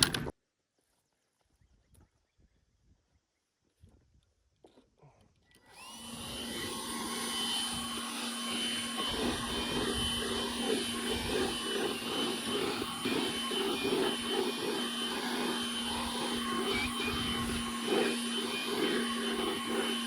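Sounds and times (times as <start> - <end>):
chainsaw cutting log: 5.7 - 20.0.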